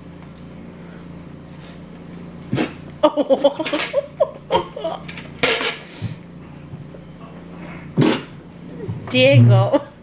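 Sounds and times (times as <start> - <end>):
person laughing: 3.0 - 5.1.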